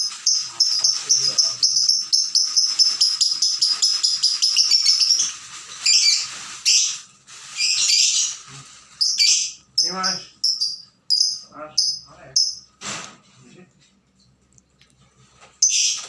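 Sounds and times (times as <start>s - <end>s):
lovebird chattering: 0.0s - 7.0s, 9.0s - 12.6s
lovebird chirping: 0.0s - 8.4s, 9.0s - 12.7s, 15.6s - 16.0s.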